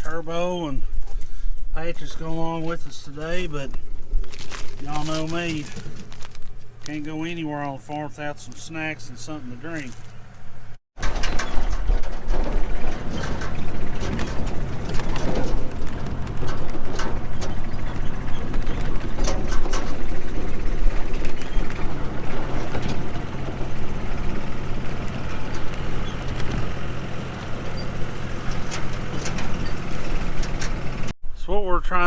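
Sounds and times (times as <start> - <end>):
vehicle engine running: 4.8 - 31.2
rattles and knocks: 11.0 - 31.1.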